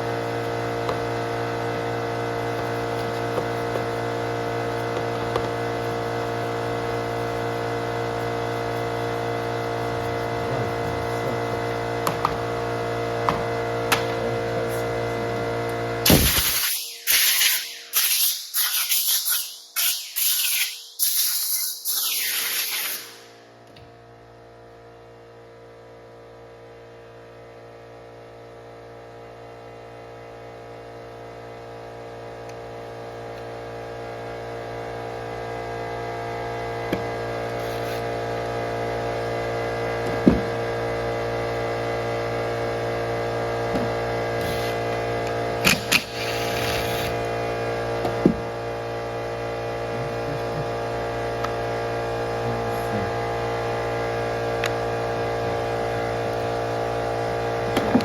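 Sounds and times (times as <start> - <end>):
steady tonal hum: 0.0 - 16.1.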